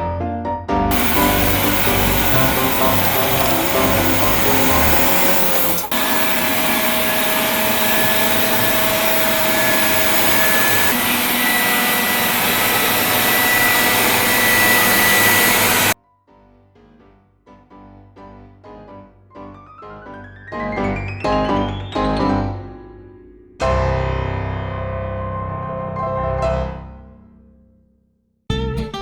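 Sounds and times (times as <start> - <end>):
robot vacuum fan rushing: 0.9 - 16.0.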